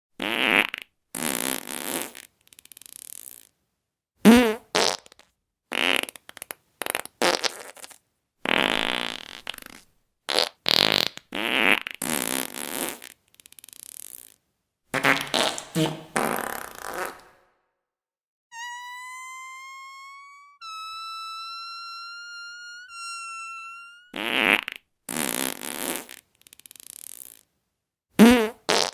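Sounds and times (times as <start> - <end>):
farts: 0.2 - 3.5, 4.2 - 14.4, 15.0 - 17.5, 23.9 - 27.5, 28.2 - 28.9.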